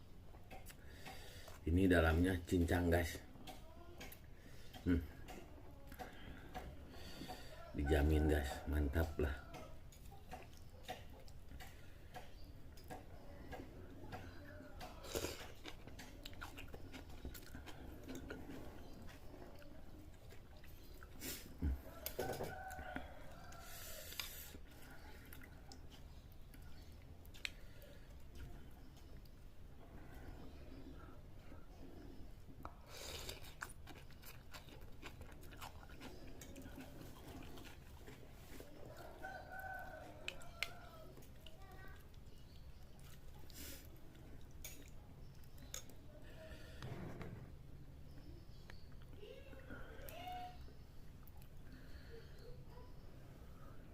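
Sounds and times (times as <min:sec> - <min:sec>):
chewing and mouth smacks: 0:09.5 - 0:29.4, 0:32.5 - 0:46.0.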